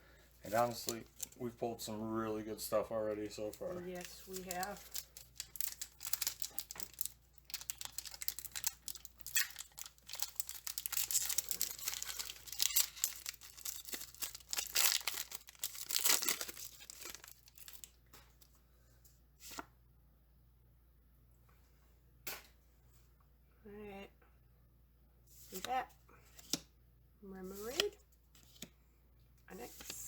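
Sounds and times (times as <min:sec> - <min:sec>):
foil wrapper tearing and crinkling: 0:03.9 - 0:18.0.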